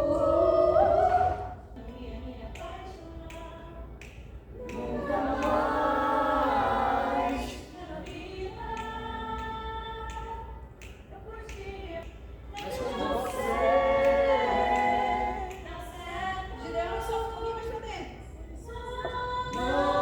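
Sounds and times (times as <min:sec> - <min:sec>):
group singing held notes: 0:00.0 - 0:02.4, 0:04.6 - 0:10.2, 0:12.5 - 0:17.6, 0:18.6 - 0:20.0.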